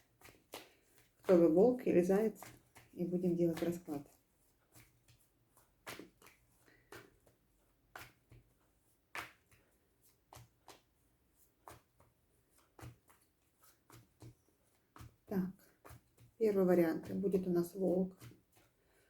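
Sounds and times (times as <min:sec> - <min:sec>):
cards clicking and snapping: 0:00.0 - 0:01.3, 0:05.6 - 0:10.9.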